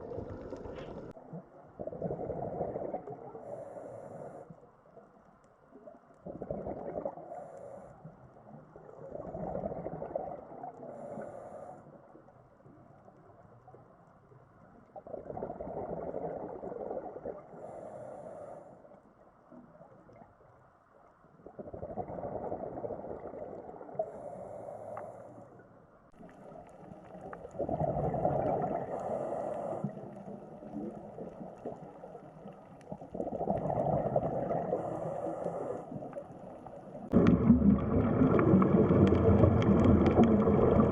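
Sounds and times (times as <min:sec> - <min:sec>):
exhaled bubbles rushing: 0:00.0 - 0:01.2, 0:06.2 - 0:07.2, 0:09.0 - 0:10.7, 0:15.0 - 0:17.4, 0:21.5 - 0:24.0, 0:26.2 - 0:29.2, 0:30.0 - 0:35.1, 0:36.9 - 0:40.9
breath through diving regulator: 0:02.6 - 0:04.6, 0:10.8 - 0:12.0, 0:17.5 - 0:19.0, 0:24.0 - 0:25.5, 0:28.6 - 0:30.3, 0:34.0 - 0:36.2.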